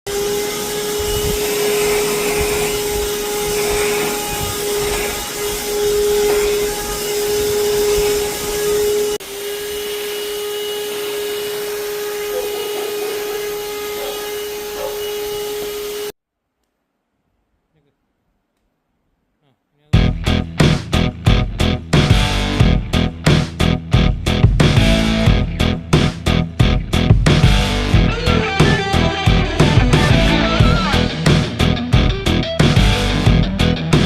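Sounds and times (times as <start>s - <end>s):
vacuum motor hum and suction: 0.1s - 16.2s.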